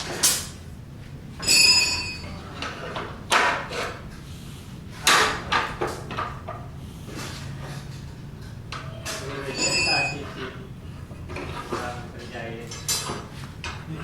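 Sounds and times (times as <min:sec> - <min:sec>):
metallic clang ringing: 0:09.5 - 0:10.2.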